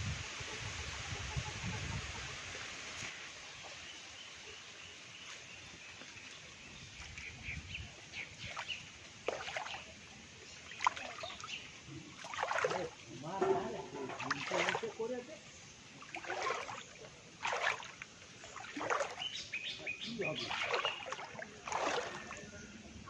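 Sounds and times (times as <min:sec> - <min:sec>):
water sloshing and trickling: 0:05.4 - 0:23.0.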